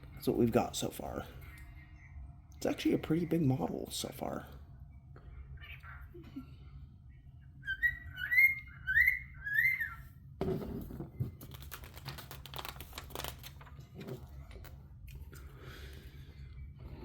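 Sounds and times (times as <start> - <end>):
whistled notes: 7.6 - 10.1.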